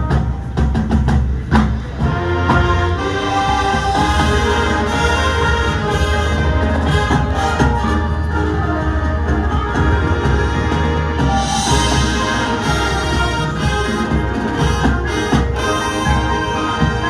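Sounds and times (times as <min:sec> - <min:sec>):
marching band playing: 0:00.0 - 0:17.0
brass sustained chords: 0:02.0 - 0:17.0
sharp percussion hits: 0:09.1 - 0:17.0.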